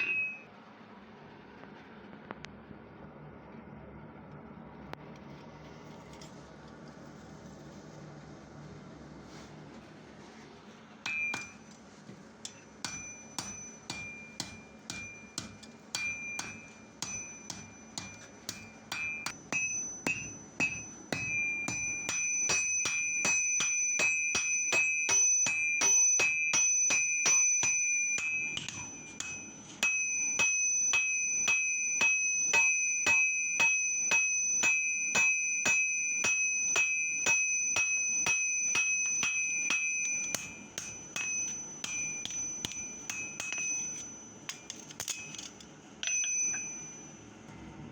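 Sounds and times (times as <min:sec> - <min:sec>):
hammer striking iron on anvil: 0:00.0 - 0:00.4, 0:11.0 - 0:11.8, 0:12.4 - 0:47.2.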